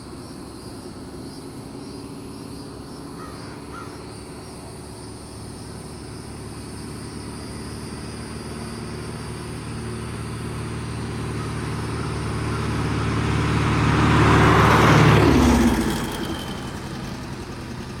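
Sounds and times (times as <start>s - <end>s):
car driving past: 5.1s - 18.0s.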